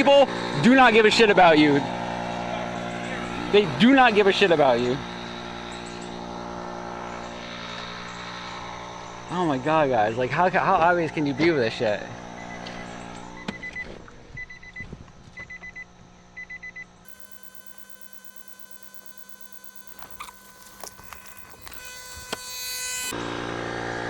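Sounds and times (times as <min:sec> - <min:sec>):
faint steady hum: 0:01.9 - 0:23.2
inflator pump beeping: 0:09.1 - 0:23.2
clicks: 0:17.1 - 0:22.7.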